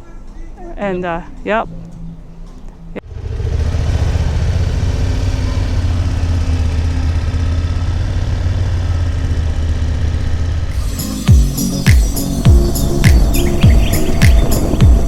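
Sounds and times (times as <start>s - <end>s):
motorcycle engine running: 3.0s - 15.0s.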